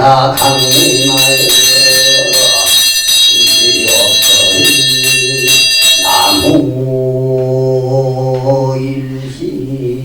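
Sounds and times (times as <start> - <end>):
man chanting: 0.0 - 10.0
handbell shaken rapidly: 0.4 - 6.5.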